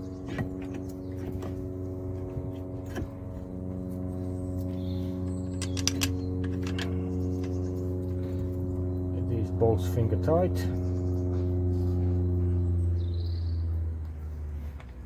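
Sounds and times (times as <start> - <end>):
low hum: 0.0 - 15.0
metallic clicks and knocks: 5.6 - 7.6.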